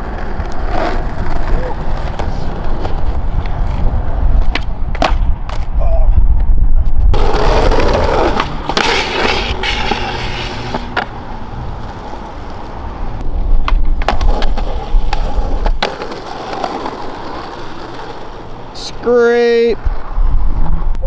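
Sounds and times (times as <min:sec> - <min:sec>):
skateboard clacks popping and landing: 0:00.0 - 0:05.8, 0:07.1 - 0:18.7
skateboard wheels rolling on concrete: 0:00.0 - 0:21.0.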